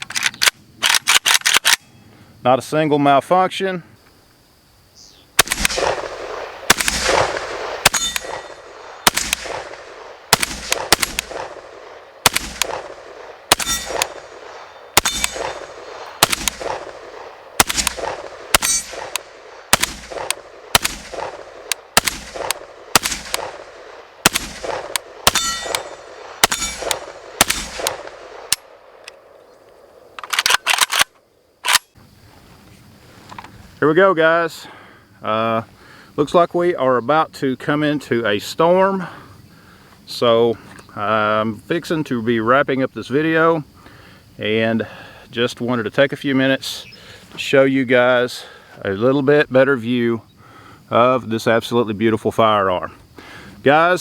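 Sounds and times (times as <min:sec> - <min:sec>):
rifle shots echoing: 0:05.4 - 0:31.1.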